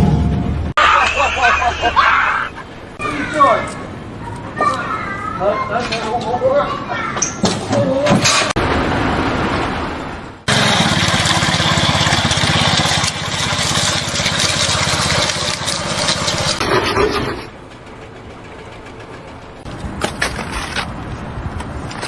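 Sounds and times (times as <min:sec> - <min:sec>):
machine running with fast pulse: 0:10.5 - 0:19.6.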